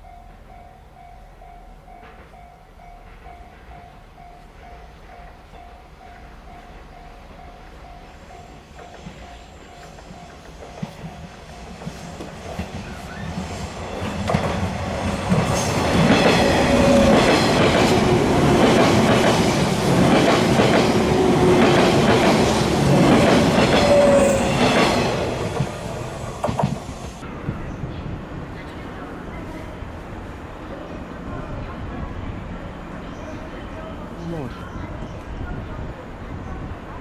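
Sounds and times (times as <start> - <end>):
electric train passing: 0.0 - 37.0
wheels clacking over rail joints: 8.7 - 27.2.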